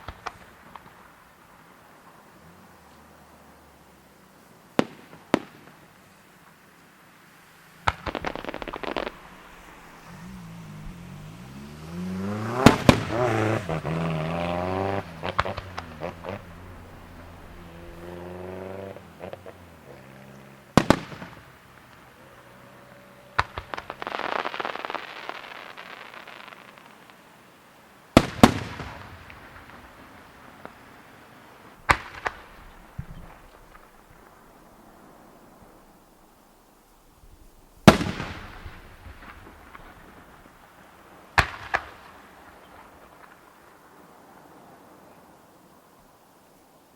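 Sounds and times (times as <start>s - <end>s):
firework pops: 0.0s - 1.1s, 4.8s - 6.0s, 7.8s - 10.2s, 12.5s - 13.8s, 15.0s - 17.1s, 20.2s - 22.0s, 23.4s - 27.2s, 28.2s - 30.9s, 31.8s - 34.5s, 37.8s - 40.6s, 41.3s - 43.5s
crackling hiss of firework stars: 0.0s - 46.9s
firework shells banging: 7.8s - 10.2s, 12.4s - 18.3s.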